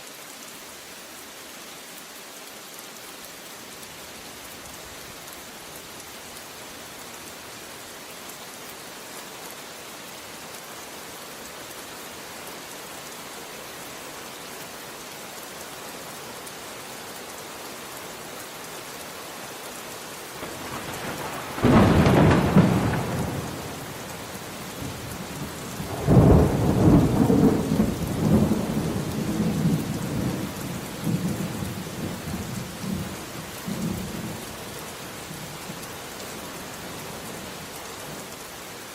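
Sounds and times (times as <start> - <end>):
steady rain falling: 0.0 - 38.9
rolling thunder: 20.4 - 30.4
thunderclap: 20.5 - 23.9.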